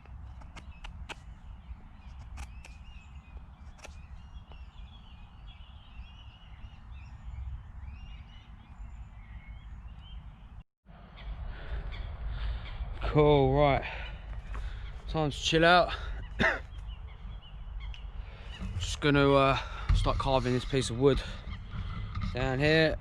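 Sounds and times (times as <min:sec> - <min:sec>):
songbirds chirping and singing: 0:00.0 - 0:23.0
steady low rumble: 0:06.6 - 0:23.0.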